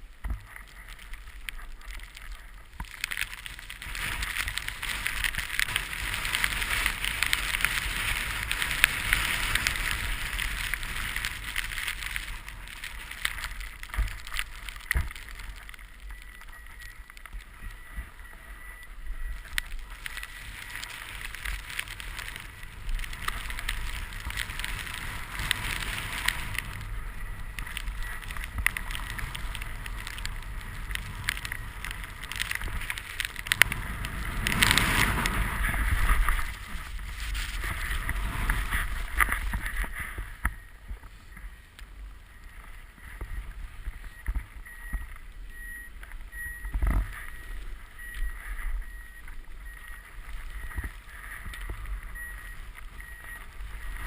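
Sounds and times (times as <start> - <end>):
snowboard carving through snow: 0.3 - 41.4.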